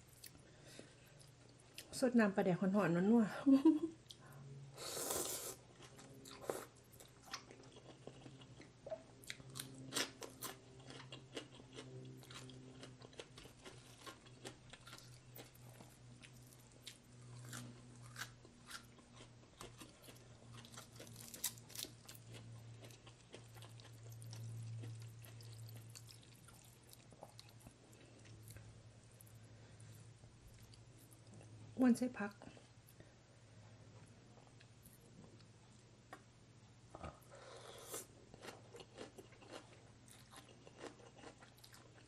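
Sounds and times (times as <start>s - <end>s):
low steady hum: 0.0s - 42.0s
person chewing crunchy food: 4.9s - 31.7s, 37.0s - 42.0s.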